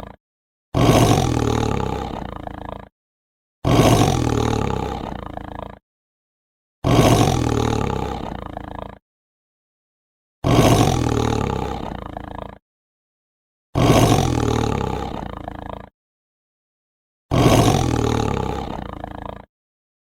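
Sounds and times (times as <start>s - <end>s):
animal roaring: 0.0s - 0.2s, 0.8s - 2.9s, 3.6s - 5.8s, 6.8s - 9.0s, 10.4s - 12.6s, 13.8s - 16.0s, 17.3s - 19.5s.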